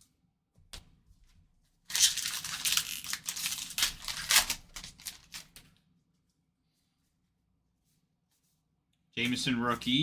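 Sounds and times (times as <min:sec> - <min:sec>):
foil wrapper tearing and crinkling: 0:01.9 - 0:05.6.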